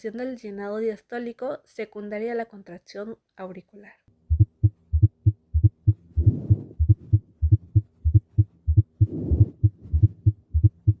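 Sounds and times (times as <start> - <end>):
heartbeat thumps through stethoscope: 4.3 - 11.0
soft rushing noise: 6.2 - 7.2.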